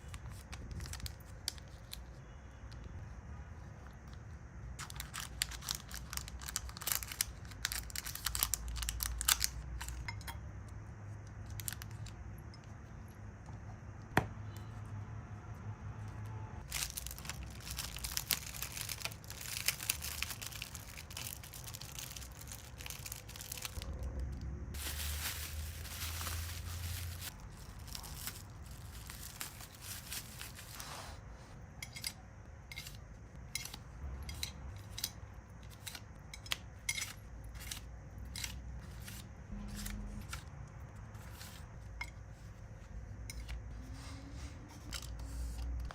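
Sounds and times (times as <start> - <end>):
plastic packaging crinkling and tearing: 0.0 - 2.2, 4.8 - 10.1, 16.6 - 31.2.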